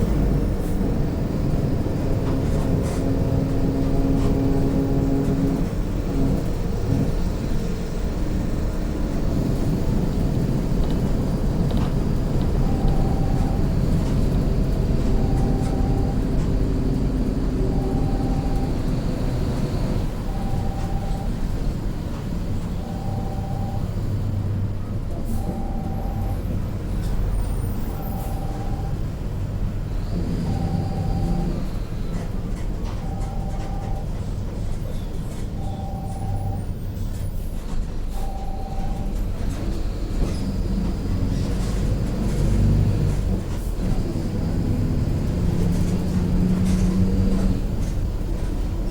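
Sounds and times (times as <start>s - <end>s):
bus diesel and road rumble: 0.0s - 48.9s.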